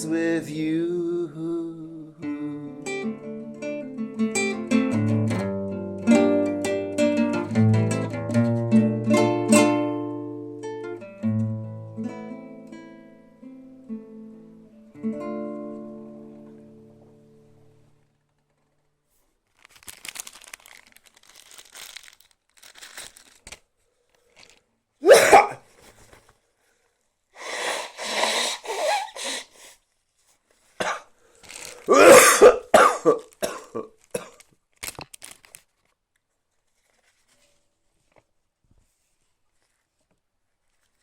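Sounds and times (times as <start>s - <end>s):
person coughing: 25.0s - 25.6s, 27.7s - 29.5s, 30.8s - 31.1s, 31.9s - 34.4s.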